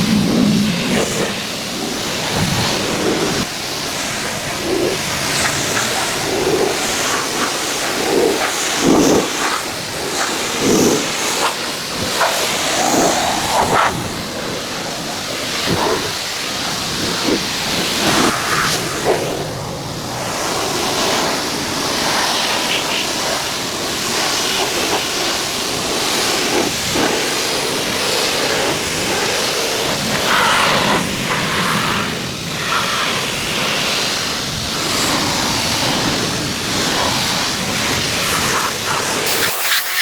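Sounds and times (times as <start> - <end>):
hissing spray from nozzle: 38.8 - 40.0.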